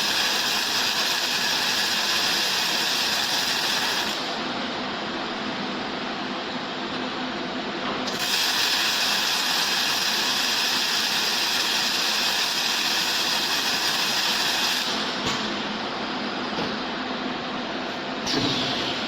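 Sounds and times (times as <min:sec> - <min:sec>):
welding hiss: 0:00.0 - 0:04.4, 0:08.1 - 0:15.2.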